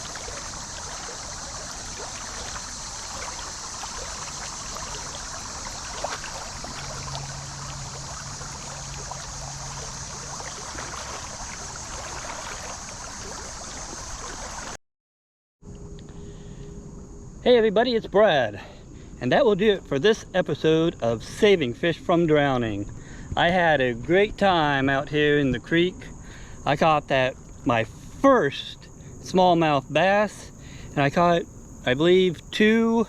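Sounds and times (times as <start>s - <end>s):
creek water over rocks: 0.0s - 14.8s.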